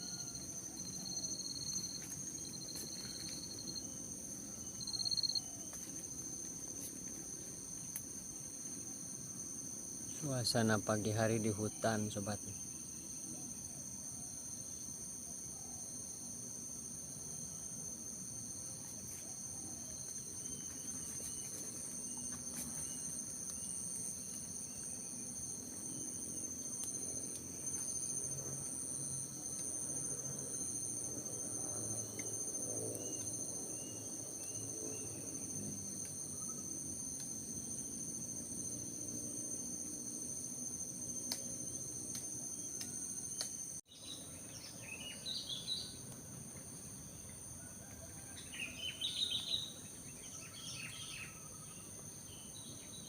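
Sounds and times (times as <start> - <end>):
insects droning: 0.0 - 53.0.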